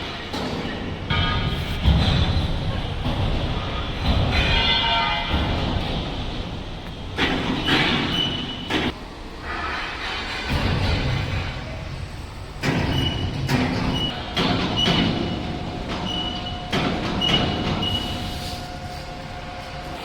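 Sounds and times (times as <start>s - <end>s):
machine mechanical rumble: 0.0s - 18.4s
sharp metallic knocks: 0.3s - 6.5s.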